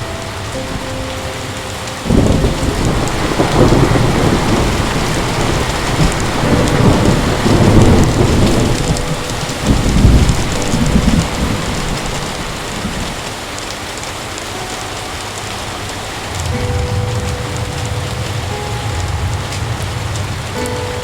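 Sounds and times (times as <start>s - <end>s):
heavy rain pouring: 0.0s - 21.0s
thunder rumbling: 0.0s - 21.0s.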